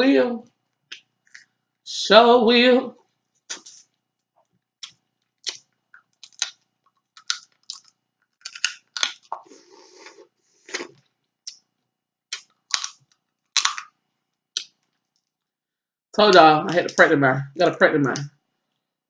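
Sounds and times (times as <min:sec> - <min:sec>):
crab shell cracking: 0:03.5 - 0:09.5, 0:12.3 - 0:15.4
chewing: 0:03.5 - 0:11.7
slurp: 0:09.3 - 0:11.0.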